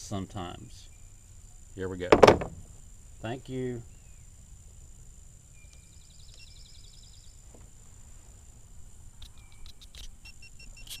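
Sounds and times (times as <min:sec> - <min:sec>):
low wind rumble: 0:00.0 - 0:06.2
high insect drone: 0:00.0 - 0:11.0
short chirps: 0:09.2 - 0:11.0.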